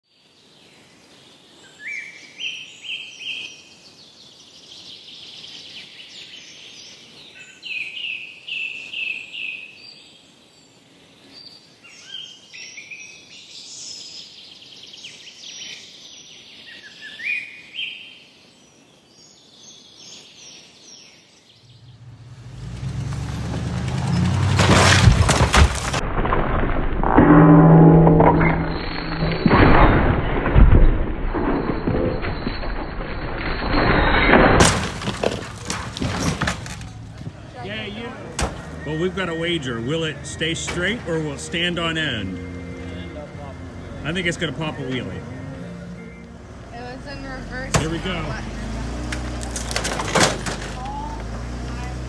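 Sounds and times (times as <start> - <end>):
songbirds singing: 0.0 - 22.8, 36.0 - 49.9
outdoor background hiss: 0.1 - 24.4
low rumble: 35.0 - 48.6.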